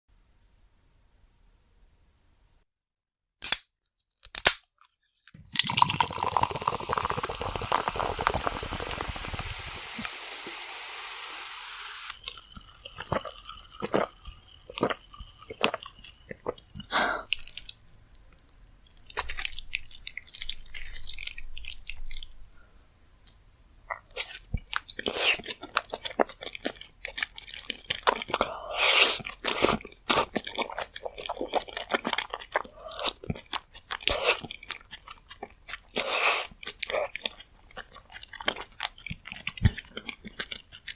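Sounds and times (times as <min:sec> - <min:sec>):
wet smacking and chewing: 0:12.1 - 0:22.6, 0:23.3 - 0:40.9.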